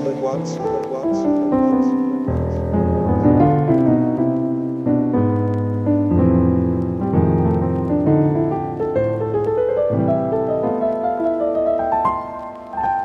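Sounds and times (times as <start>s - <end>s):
piano music: 0.0s - 13.0s.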